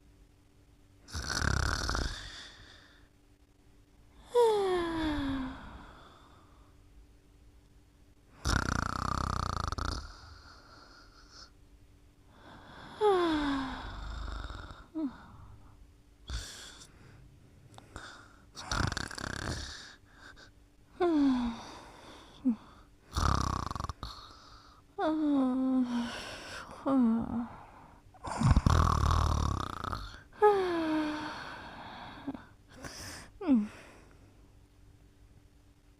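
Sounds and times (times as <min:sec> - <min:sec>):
rasping snores: 0:01.1 - 0:02.8, 0:08.4 - 0:11.5, 0:18.0 - 0:20.0, 0:23.1 - 0:24.6, 0:28.2 - 0:30.2.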